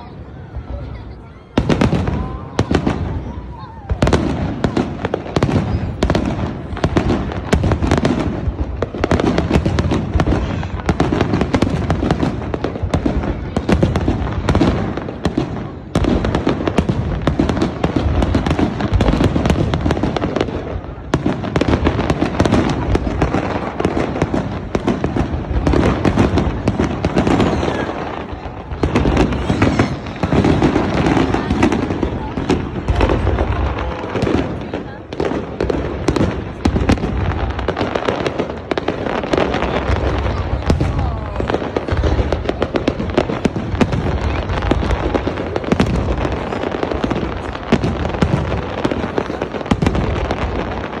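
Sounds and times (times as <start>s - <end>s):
fireworks cracks and bangs: 0.0s - 51.0s.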